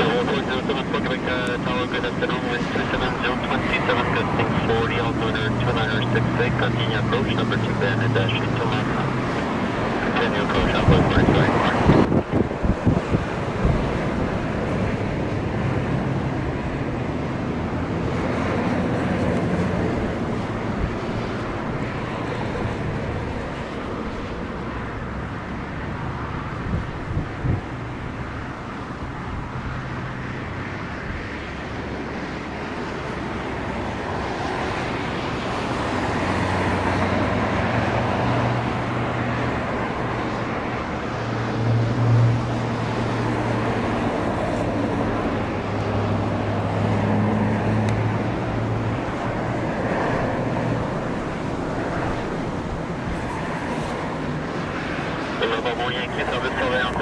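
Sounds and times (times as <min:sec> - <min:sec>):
airliner engine hum: 0:00.0 - 0:57.0
wind on microphone: 0:09.1 - 0:15.0, 0:26.5 - 0:27.9.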